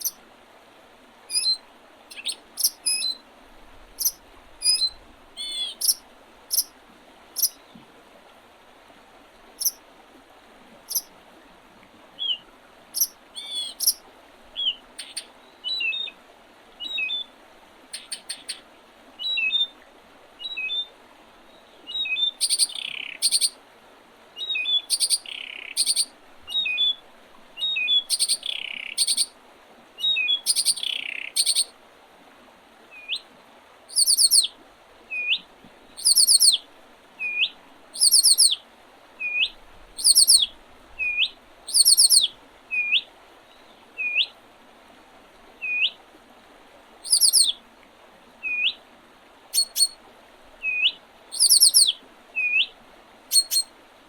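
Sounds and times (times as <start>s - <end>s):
high rapid bird trills: 1.3s - 3.2s, 4.0s - 6.7s, 7.4s - 7.6s, 13.0s - 14.0s, 17.9s - 18.6s, 22.1s - 23.6s, 24.4s - 26.9s, 27.6s - 29.3s, 30.2s - 31.7s, 33.9s - 34.5s, 36.0s - 36.6s, 38.0s - 38.6s, 39.3s - 43.0s, 47.0s - 47.5s, 49.5s - 50.0s, 50.8s - 52.6s, 53.3s - 53.7s
bird repeating upturned call: 4.0s - 6.7s, 7.4s - 7.6s, 13.0s - 14.0s, 22.0s - 23.5s, 24.4s - 27.0s, 27.6s - 29.3s, 30.1s - 31.7s, 33.9s - 34.5s, 36.0s - 36.6s, 37.2s - 38.6s, 39.2s - 43.0s, 47.0s - 47.5s, 49.5s - 50.0s, 50.7s - 52.7s, 53.3s - 53.7s.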